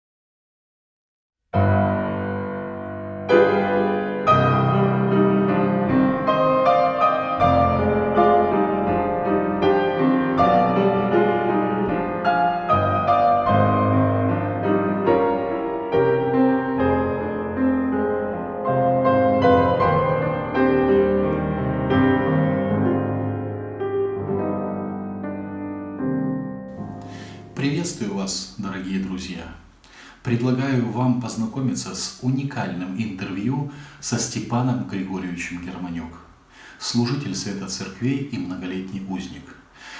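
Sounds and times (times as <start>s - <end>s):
piano music: 1.5s - 29.6s.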